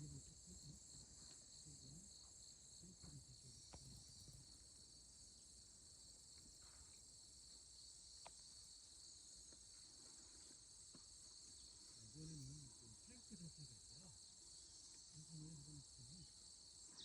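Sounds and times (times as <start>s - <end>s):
low voice-like sound: 0.0s - 0.9s, 12.0s - 14.2s, 15.1s - 16.3s
crickets chirping: 0.0s - 17.0s.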